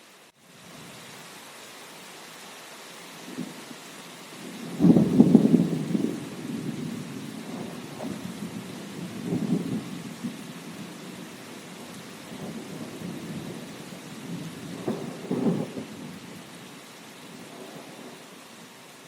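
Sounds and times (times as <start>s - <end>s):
steady rain falling: 0.0s - 19.0s
low rumbles of thunder: 4.4s - 18.2s.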